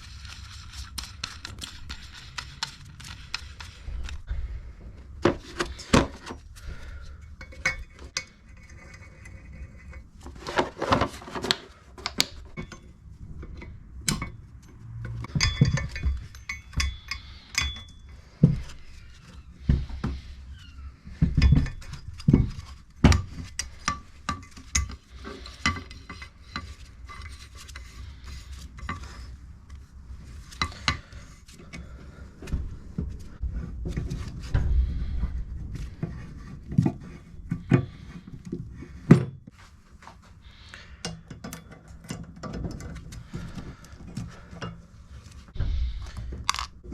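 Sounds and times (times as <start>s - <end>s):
metal tools clinking on a workbench: 12.1s - 18.2s.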